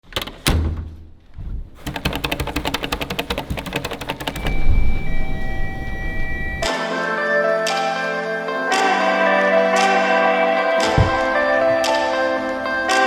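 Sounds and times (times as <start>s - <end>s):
rapid mechanical clicking: 1.8s - 6.7s
steady tones: 1.9s - 6.7s
music: 1.9s - 13.0s.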